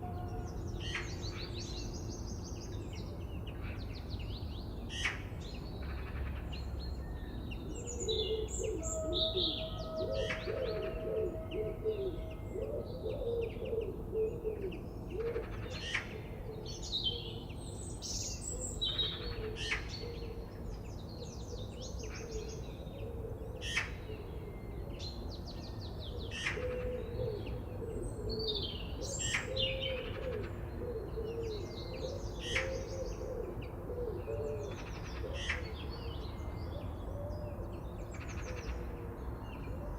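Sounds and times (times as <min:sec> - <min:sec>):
low warbling bird call: 0:08.3 - 0:13.9.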